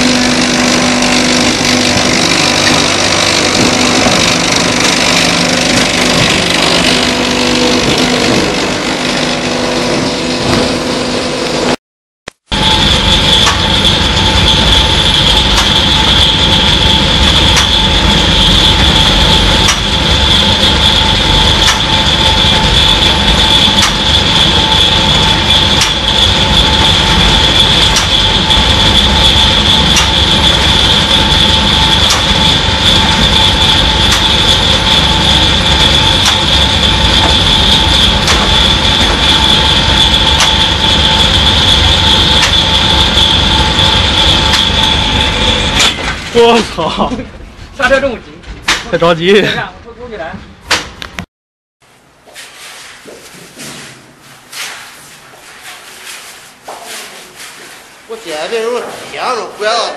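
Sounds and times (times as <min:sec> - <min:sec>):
concrete pump running: 0:00.0 - 0:11.8, 0:12.4 - 0:47.0.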